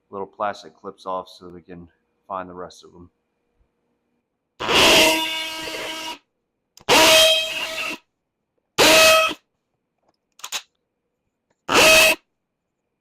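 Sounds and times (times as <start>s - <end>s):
power drill drilling rivets: 4.6s - 6.2s, 6.8s - 8.0s.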